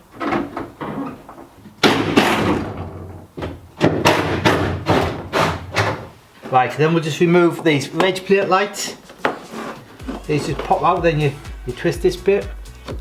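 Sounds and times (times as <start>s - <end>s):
knocks and clunks on car boot: 1.8s - 6.1s.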